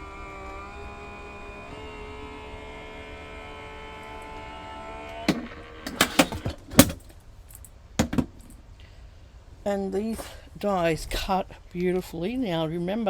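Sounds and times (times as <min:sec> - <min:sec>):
die-cutting machine motor hum: 0:00.0 - 0:07.0
metal plates clicking and clacking: 0:05.3 - 0:07.1.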